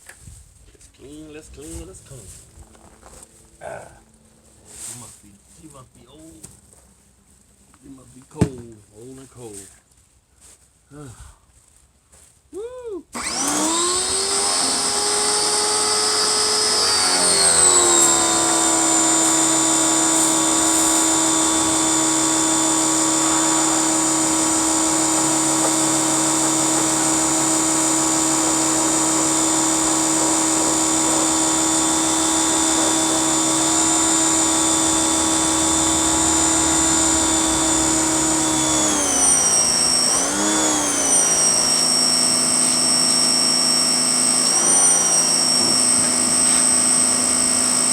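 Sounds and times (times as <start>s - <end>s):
pressure washer running: 13.2s - 47.9s.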